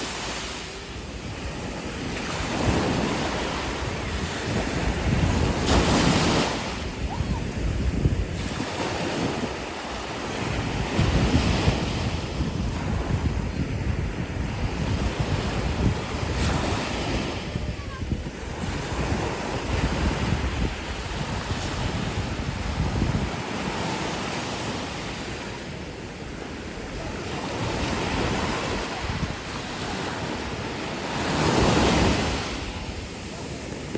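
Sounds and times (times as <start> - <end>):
sea waves washing onto beach: 0.0 - 33.9
wind rumbling on microphone: 0.0 - 33.9.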